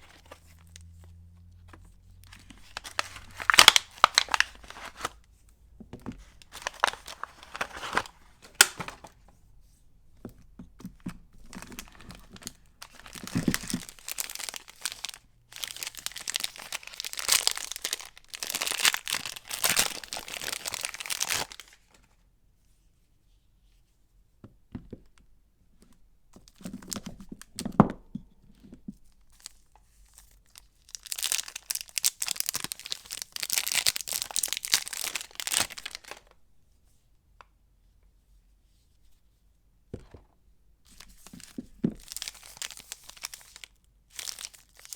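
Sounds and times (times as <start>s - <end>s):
packaging tearing and crinkling: 2.2s - 5.2s, 6.4s - 9.1s, 11.5s - 21.8s, 30.9s - 36.3s, 41.0s - 44.9s.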